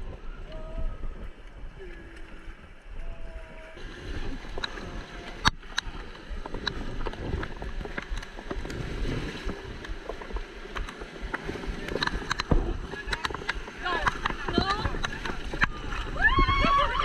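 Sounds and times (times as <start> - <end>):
river water rushing and sloshing: 1.0 - 17.0
sharp knocks and clicks: 9.8 - 15.7.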